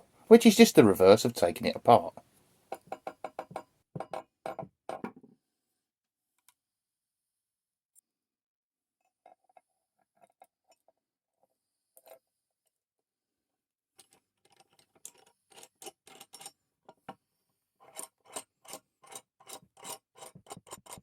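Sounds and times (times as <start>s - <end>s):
small metal parts clicking: 14.0s - 16.6s
metal-on-metal scraping: 17.8s - 21.0s.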